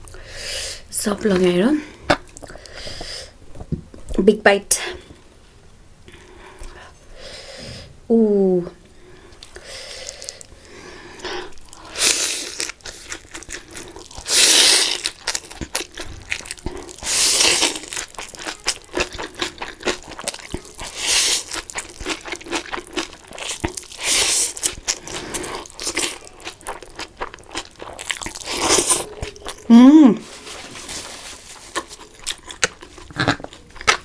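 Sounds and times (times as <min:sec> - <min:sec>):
person chewing crunchy food: 0:01.3 - 0:03.7, 0:09.4 - 0:34.0.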